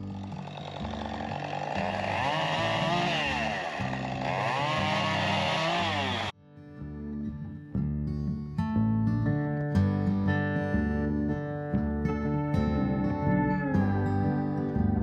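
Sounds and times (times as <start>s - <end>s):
chainsaw cutting wood: 0.0s - 6.3s.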